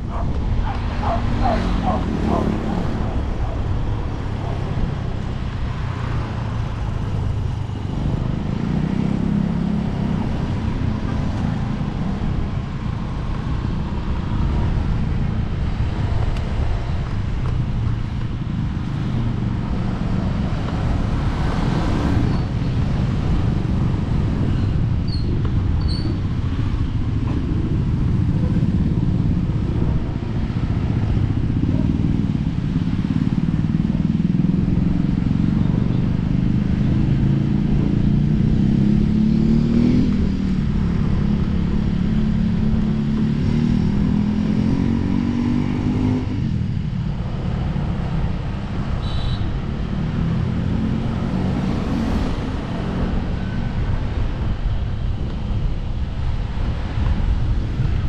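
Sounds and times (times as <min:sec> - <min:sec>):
motorcycle engine running: 0:00.0 - 0:10.8
road rumble: 0:00.0 - 0:58.0.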